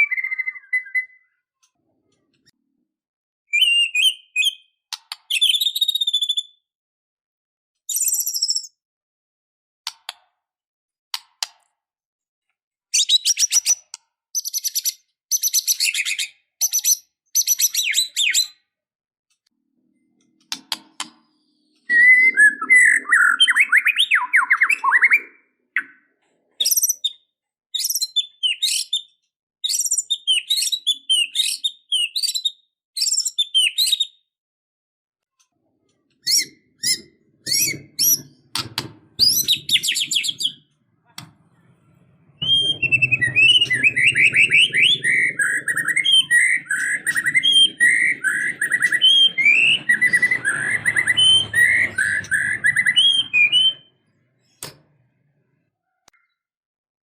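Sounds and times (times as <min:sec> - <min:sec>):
bird singing whistles and trills: 0:00.0 - 0:01.5, 0:03.5 - 0:06.6, 0:07.9 - 0:08.8, 0:12.9 - 0:18.6, 0:21.4 - 0:27.2, 0:27.8 - 0:34.2, 0:36.2 - 0:38.6, 0:39.2 - 0:40.7, 0:42.4 - 0:54.0.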